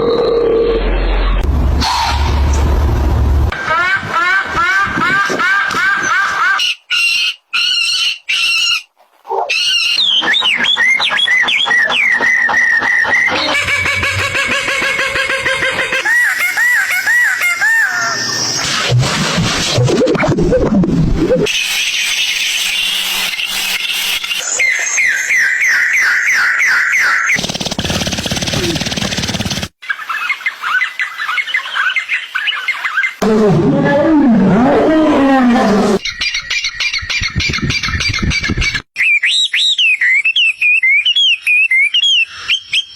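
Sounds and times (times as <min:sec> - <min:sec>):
bird whistling descending notes: 0:09.5 - 0:18.7, 0:21.5 - 0:27.4, 0:36.0 - 0:42.9.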